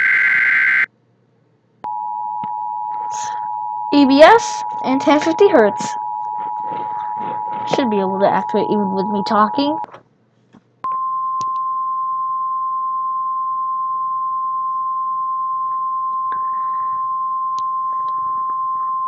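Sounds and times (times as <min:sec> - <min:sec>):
steady pure alert tone: 0:02.8 - 0:09.9.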